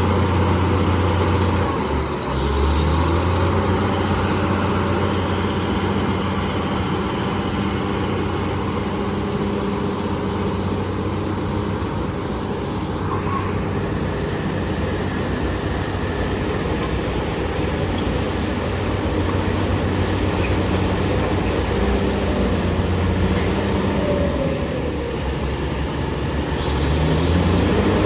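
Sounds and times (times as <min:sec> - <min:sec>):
bulldozer diesel engine running: 0:00.0 - 0:28.0.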